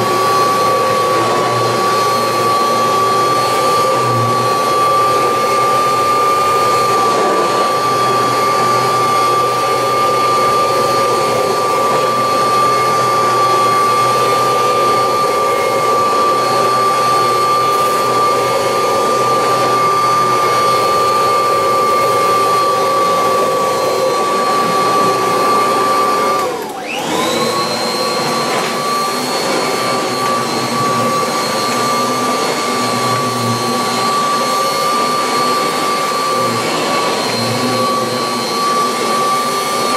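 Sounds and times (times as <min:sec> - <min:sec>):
vacuum cleaner motor whine: 0:00.0 - 0:39.9.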